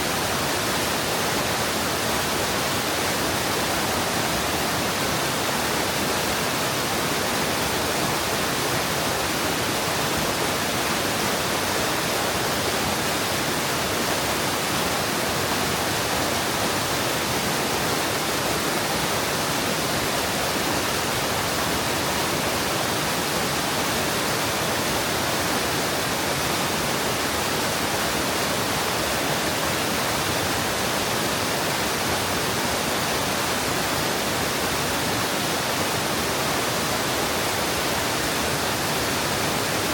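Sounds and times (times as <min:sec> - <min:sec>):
water rushing over rocks: 0:00.0 - 0:39.9.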